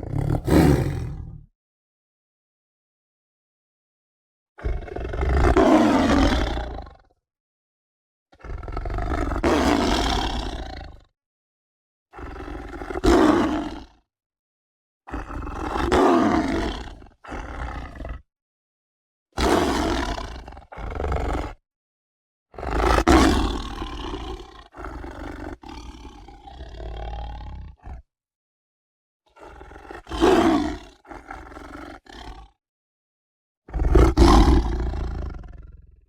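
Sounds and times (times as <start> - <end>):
big cat roaring: 0.0 - 1.5, 4.6 - 7.1, 8.4 - 11.0, 12.1 - 14.0, 15.1 - 18.2, 19.4 - 21.6, 22.5 - 28.1, 29.3 - 32.6, 33.7 - 36.0.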